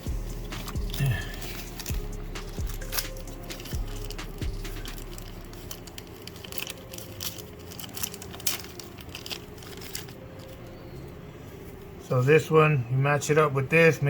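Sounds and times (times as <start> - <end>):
small parts clicking: 0.0 - 10.6
packaging rustling: 0.0 - 11.2
steady low hum: 0.0 - 13.7.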